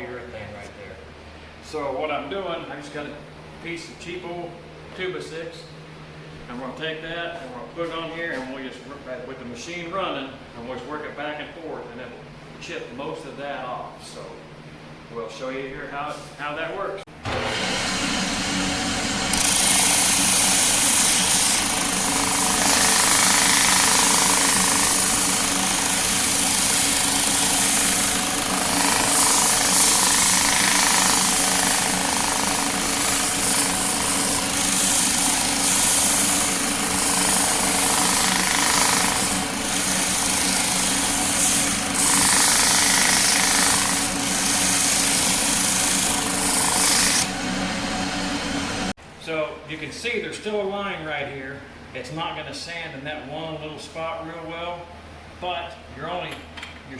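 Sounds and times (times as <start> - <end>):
floor sander motor hum: 17.2 - 49.0
wood grinding against sanding drum: 19.3 - 48.9.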